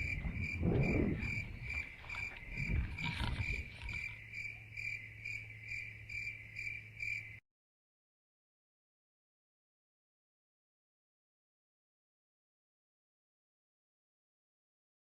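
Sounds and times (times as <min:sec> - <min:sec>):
low thumps: 0:00.0 - 0:04.0
low hum: 0:00.0 - 0:07.0.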